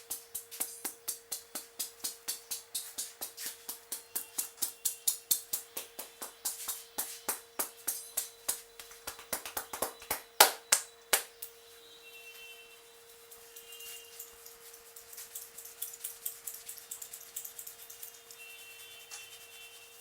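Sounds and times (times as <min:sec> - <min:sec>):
hand slaps and taps on head: 0:00.0 - 0:11.4.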